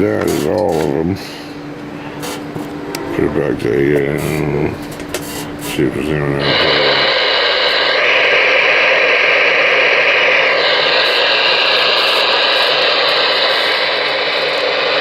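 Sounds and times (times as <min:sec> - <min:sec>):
radio static: 0:03.1 - 0:15.0.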